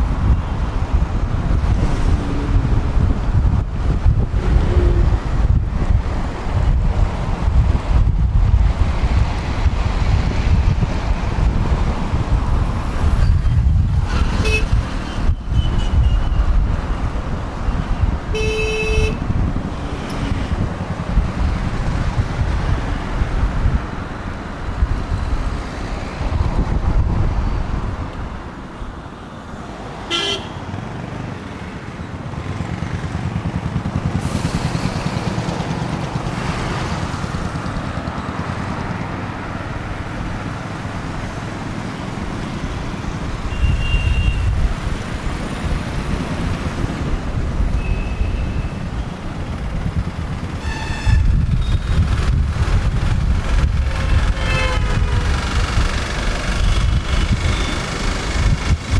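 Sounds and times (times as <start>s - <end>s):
heavy road traffic rumble: 0.0s - 58.9s
vehicle horns honking: 14.1s - 16.4s, 18.3s - 19.3s, 30.1s - 30.6s, 43.4s - 44.5s, 47.7s - 49.0s, 50.5s - 52.0s, 53.8s - 58.0s.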